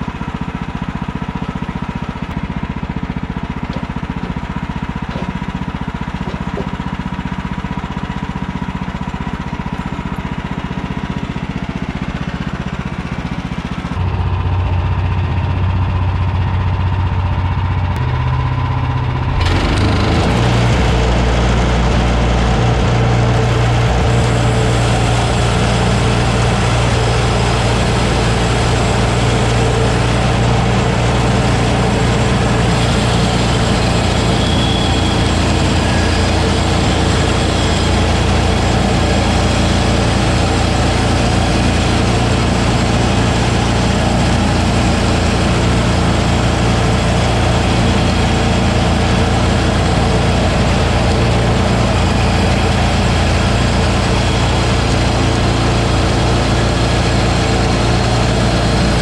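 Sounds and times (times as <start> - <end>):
gas engine running: 0.0 - 59.0
saw blade cutting log: 0.2 - 8.9, 23.5 - 57.4.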